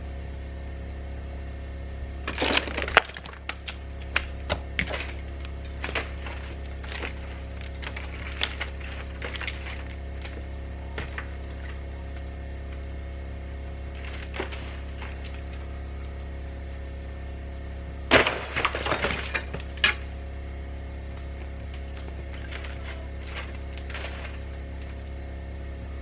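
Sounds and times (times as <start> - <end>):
steady low hum: 0.0 - 26.0
ice cracking and breaking: 2.3 - 10.4, 14.0 - 15.6, 18.1 - 20.1, 21.9 - 24.6.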